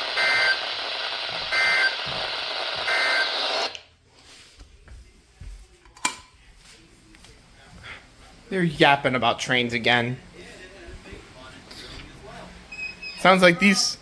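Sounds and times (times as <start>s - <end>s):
data bursts: 0.0s - 3.7s
radio static: 0.0s - 3.8s.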